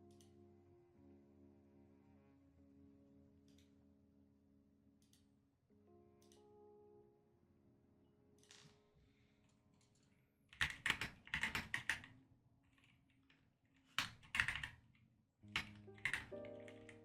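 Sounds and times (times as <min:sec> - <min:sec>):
mechanical keyboard keys clacking: 0:10.6 - 0:12.1, 0:13.9 - 0:14.8, 0:15.5 - 0:17.0.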